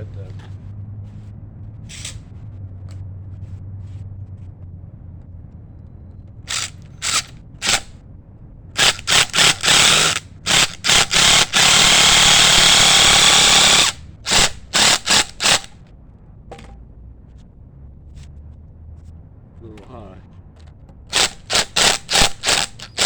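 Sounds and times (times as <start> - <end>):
impact driver driving a screw: 6.5 - 7.9, 8.8 - 15.7, 21.1 - 23.0.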